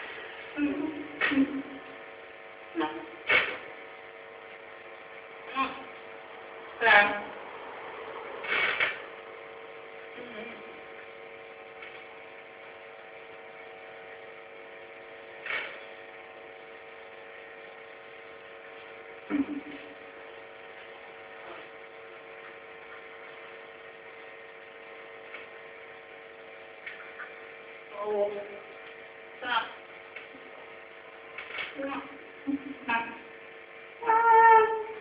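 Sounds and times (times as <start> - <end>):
steady electrical hum: 0.0 - 35.0.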